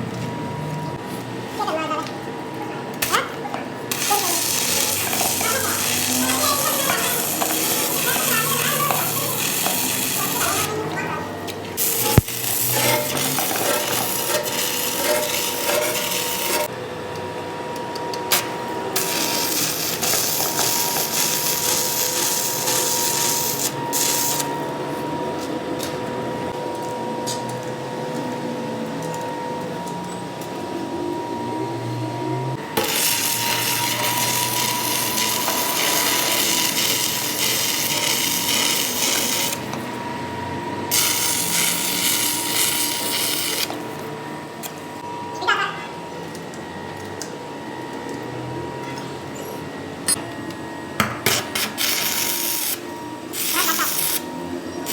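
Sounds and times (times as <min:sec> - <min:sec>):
cutting tool scraping steel: 0:03.9 - 0:10.8, 0:11.8 - 0:16.7
metal lathe whining: 0:03.9 - 0:11.0, 0:32.6 - 0:43.8.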